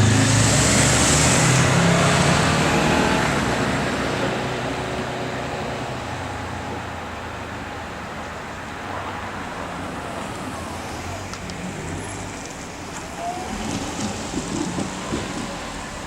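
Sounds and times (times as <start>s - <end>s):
low hum of road traffic: 0.0s - 16.0s.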